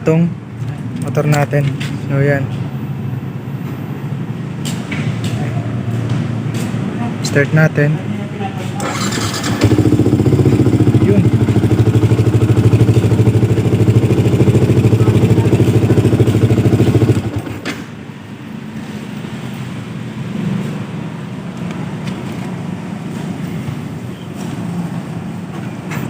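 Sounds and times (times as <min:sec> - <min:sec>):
motorcycle engine idling: 0:08.8 - 0:17.6.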